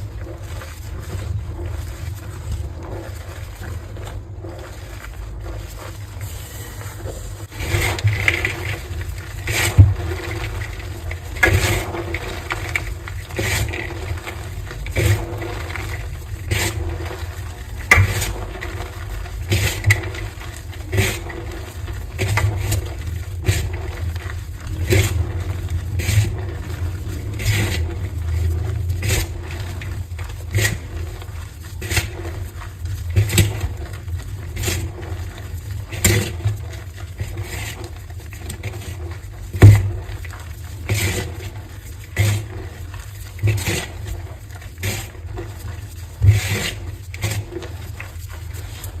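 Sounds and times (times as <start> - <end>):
chalk blocks crunching: 0.0 - 49.0
low rumble: 22.8 - 36.0.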